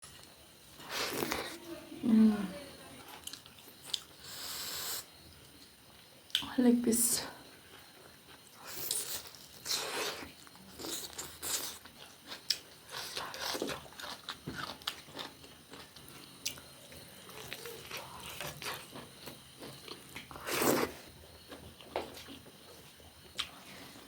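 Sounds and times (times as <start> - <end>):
chewing crunchy fried food: 3.0 - 4.4, 7.7 - 23.8.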